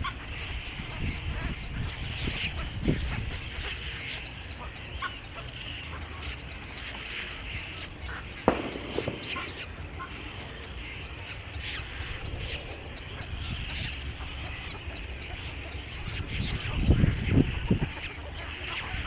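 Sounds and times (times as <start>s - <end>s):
birds chirping: 0.0s - 19.0s
sharp tap: 8.5s - 10.6s.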